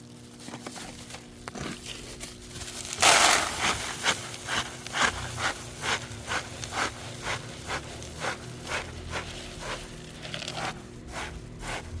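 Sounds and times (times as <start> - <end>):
cat crunching dry food: 0.2 - 11.8.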